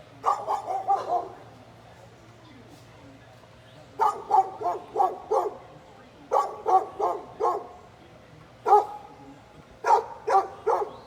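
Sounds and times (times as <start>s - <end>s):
dog barking: 0.2s - 1.4s, 4.0s - 5.6s, 6.3s - 7.8s, 8.7s - 9.1s, 9.8s - 11.0s.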